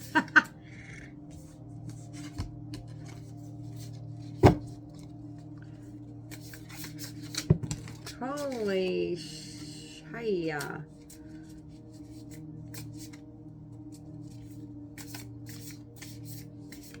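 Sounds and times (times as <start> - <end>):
low music drone: 0.0 - 17.0
cards being shuffled: 1.8 - 5.5, 6.3 - 8.8, 10.9 - 17.0
cards slapping: 6.3 - 8.7, 15.0 - 17.0.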